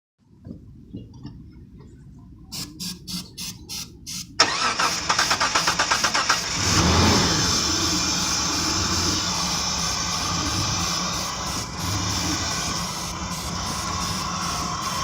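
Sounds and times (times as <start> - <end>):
car engine cranking: 4.4 - 15.0
car engine revving and running: 4.4 - 15.0.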